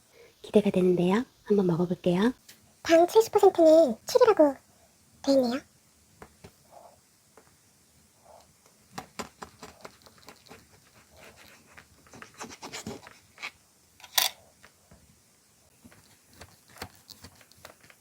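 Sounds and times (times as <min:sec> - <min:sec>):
bread packaging rustling: 0:15.8 - 0:18.0
packaging snapping: 0:15.9 - 0:18.0.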